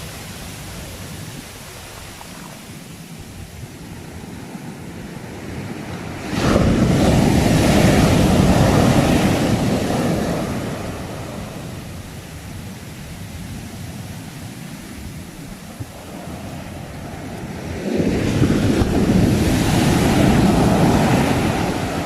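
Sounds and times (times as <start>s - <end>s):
surf washing: 0.0s - 22.0s
wave breaking: 6.0s - 12.0s, 15.9s - 22.0s.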